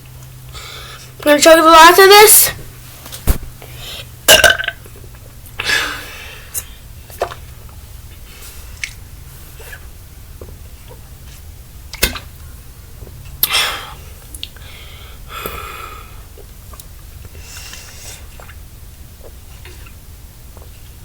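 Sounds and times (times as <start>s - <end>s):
person gasping and exhaling: 13.4s - 16.3s.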